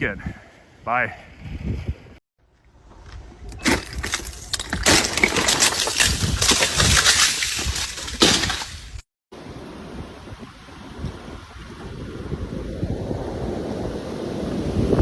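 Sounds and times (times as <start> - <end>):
steady wind noise: 0.0 - 3.6, 8.8 - 15.0
ice cracking and clattering: 3.6 - 8.8.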